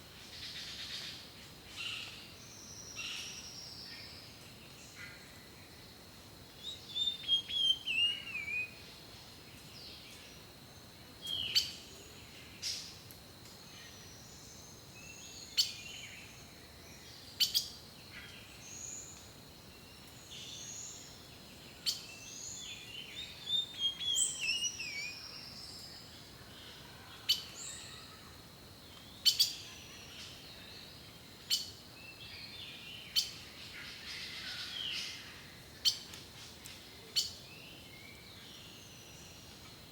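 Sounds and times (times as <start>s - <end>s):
faint outdoor background: 0.0s - 39.9s
birds singing and calling: 6.6s - 8.8s, 16.9s - 26.0s.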